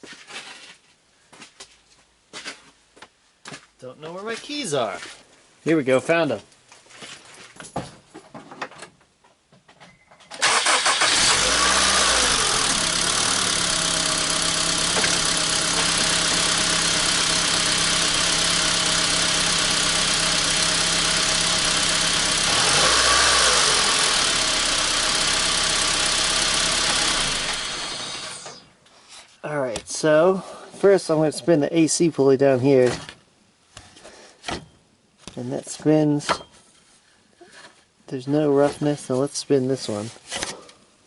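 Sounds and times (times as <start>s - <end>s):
car engine starting and idling: 10.4s - 28.7s.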